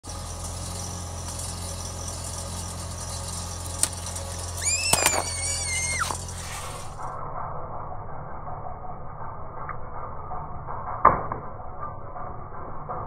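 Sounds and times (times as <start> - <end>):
car engine idling: 0.0 - 7.2
high squeal: 4.4 - 7.6
loud cracks: 4.6 - 6.3.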